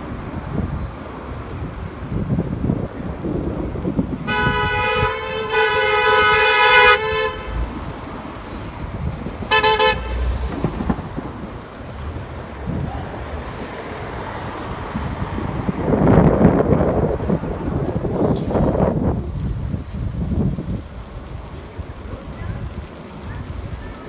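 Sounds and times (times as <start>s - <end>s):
traffic: 0.0s - 24.0s
wind noise: 0.0s - 24.0s
car horn honking: 4.2s - 8.3s, 9.4s - 10.8s.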